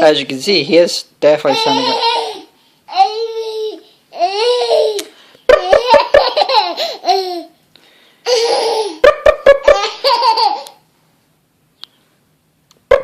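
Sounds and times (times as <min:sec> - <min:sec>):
baby boy giggling: 0:01.5 - 0:07.6, 0:08.3 - 0:10.8.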